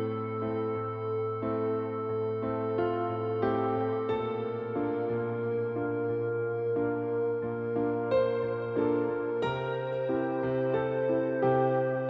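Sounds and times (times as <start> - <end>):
steady low drone: 0.0 - 12.0
sustained keyboard chords: 0.0 - 12.0.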